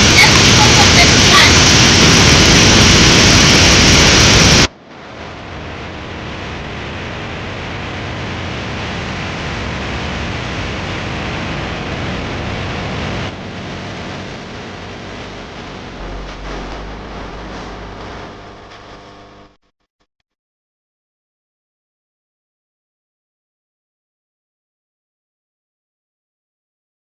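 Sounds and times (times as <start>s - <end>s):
waterfall roaring: 0.0s - 18.7s.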